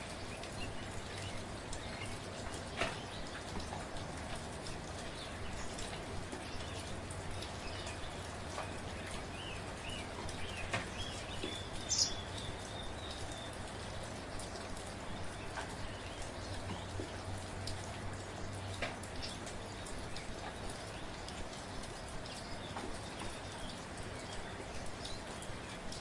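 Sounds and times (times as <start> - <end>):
soft rain with dripping drops: 0.0 - 26.0
bird chirping: 9.4 - 13.6.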